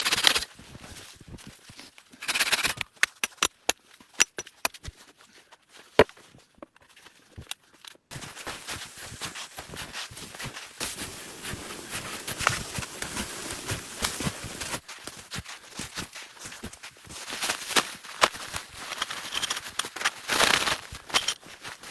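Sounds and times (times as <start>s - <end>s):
sharp clicks and knocks: 2.2s - 4.8s
crackling rustle: 8.1s - 21.9s.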